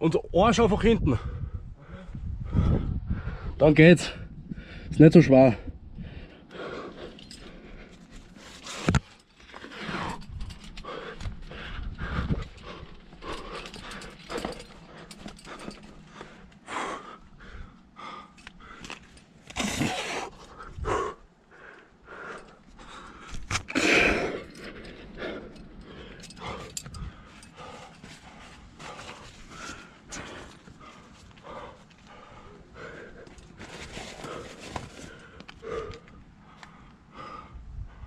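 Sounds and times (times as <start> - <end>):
heavy breathing: 1.2 - 5.0, 5.6 - 38.0
gear scraping against rock: 7.0 - 16.5, 33.2 - 35.3
rustling: 33.1 - 35.5.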